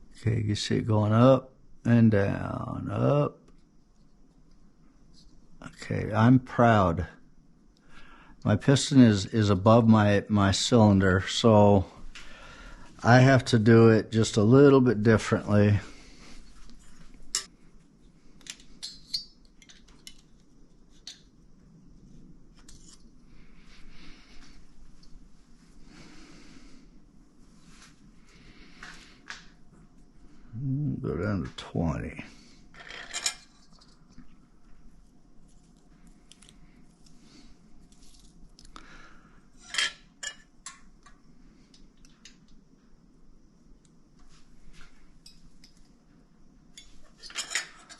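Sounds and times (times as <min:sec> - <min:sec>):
metallic clicks of tools and parts: 0:18.4 - 0:21.3.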